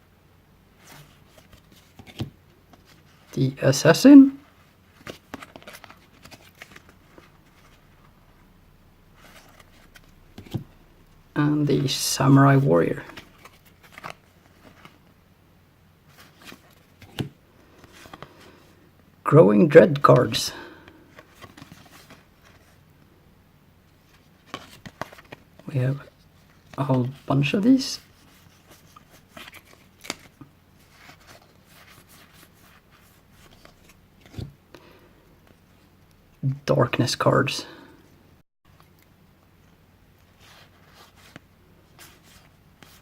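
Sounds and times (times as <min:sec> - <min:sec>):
cards rustling: 0:00.8 - 0:08.2, 0:09.1 - 0:10.8, 0:11.4 - 0:15.1, 0:16.1 - 0:18.8, 0:19.8 - 0:22.8, 0:24.0 - 0:34.6, 0:40.1 - 0:43.0.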